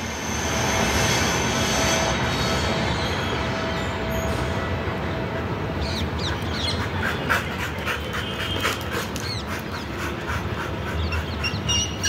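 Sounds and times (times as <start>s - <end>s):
dog panting: 6.6s - 11.8s.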